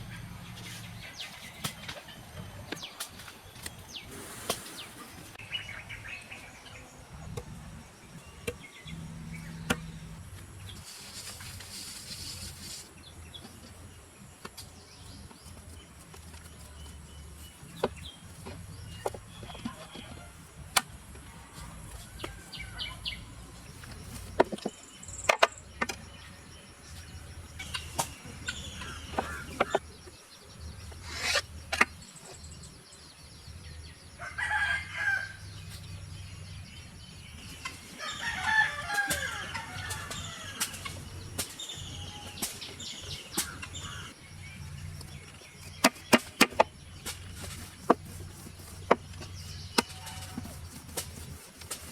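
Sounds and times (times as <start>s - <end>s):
rooster crowing: 34.2s - 35.4s, 38.0s - 40.6s.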